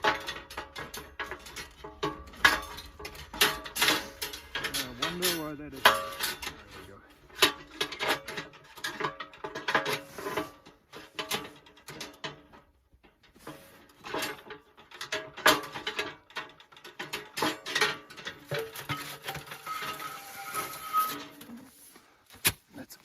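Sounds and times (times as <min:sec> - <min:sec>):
sheet metal parts clanking: 0:00.0 - 0:21.8.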